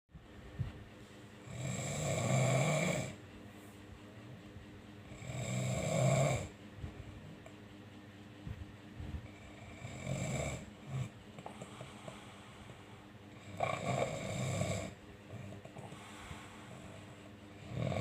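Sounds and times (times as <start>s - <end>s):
person snoring: 1.4s - 3.2s, 5.1s - 6.6s, 9.3s - 18.0s.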